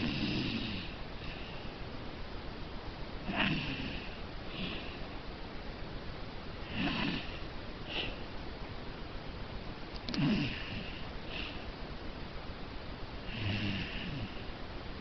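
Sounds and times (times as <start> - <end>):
cat snoring: 0.0 - 1.5, 3.2 - 5.0, 6.6 - 8.2, 10.2 - 11.6, 13.2 - 14.5.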